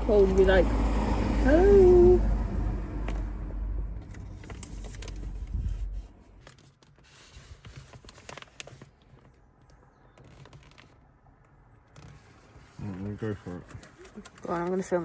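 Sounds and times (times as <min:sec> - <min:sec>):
car engine and road rumble: 0:00.0 - 0:06.7
small clicks and rattles: 0:04.0 - 0:05.8, 0:06.4 - 0:15.0.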